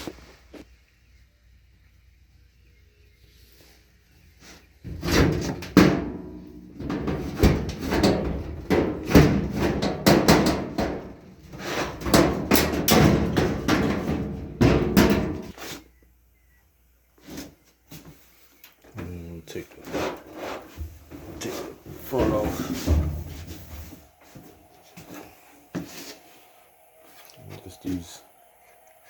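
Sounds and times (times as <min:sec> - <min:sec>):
knocking on sheet metal: 0:04.9 - 0:15.5.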